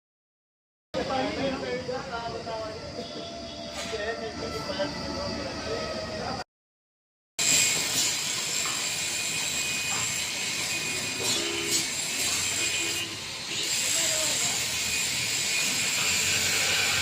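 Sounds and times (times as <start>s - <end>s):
arc welding crackling hiss: 7.4s - 17.0s.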